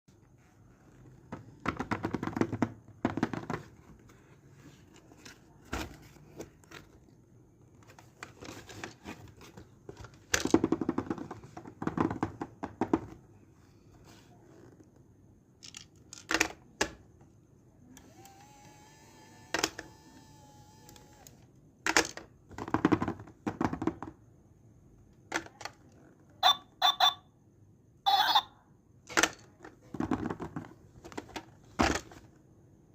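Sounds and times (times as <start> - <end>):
short chirp-like tones: 26.4 - 27.2, 28.1 - 28.5.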